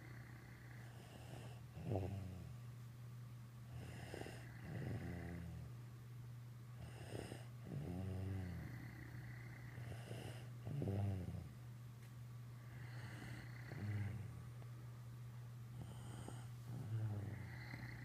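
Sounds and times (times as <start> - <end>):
person snoring: 0.0 - 2.4, 3.7 - 5.6, 6.8 - 11.5, 12.6 - 14.4, 15.8 - 18.0.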